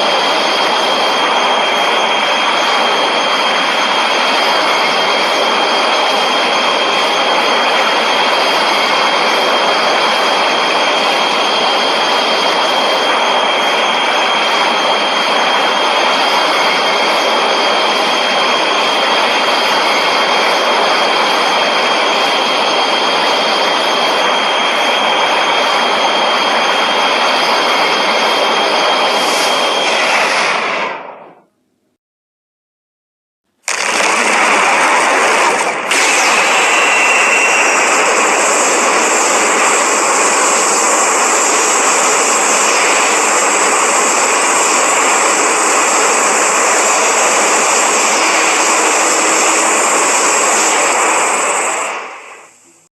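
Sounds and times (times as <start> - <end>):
harsh monster roar with whistle: 33.9 - 52.4.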